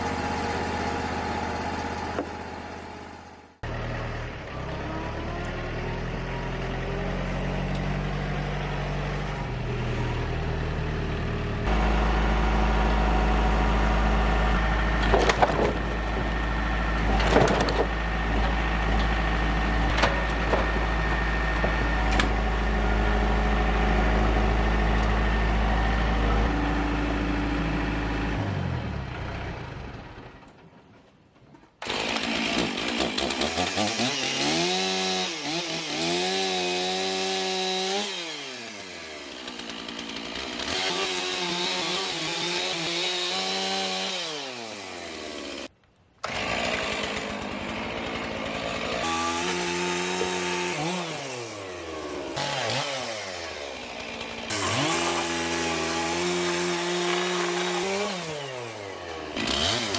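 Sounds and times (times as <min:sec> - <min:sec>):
engine-driven machine running: 0:00.0 - 0:31.0
chainsaw revving: 0:31.8 - 0:59.9.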